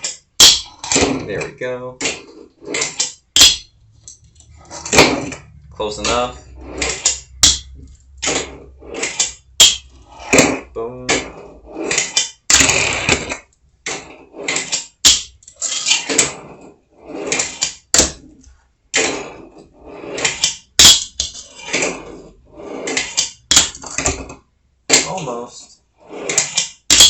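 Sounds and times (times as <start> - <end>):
wheels rolling on wooden ramp: 3.9 - 20.6, 21.2 - 24.5, 26.0 - 26.8
board popping and landing clacks: 4.8 - 6.2, 22.9 - 25.2, 26.3 - 27.0.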